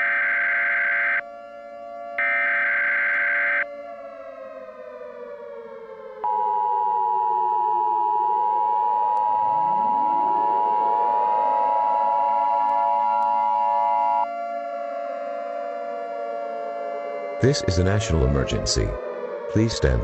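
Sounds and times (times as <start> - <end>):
alert siren winding: 0.0 - 1.2, 2.2 - 3.6
loud steady alert tone: 0.0 - 1.2, 2.2 - 3.6.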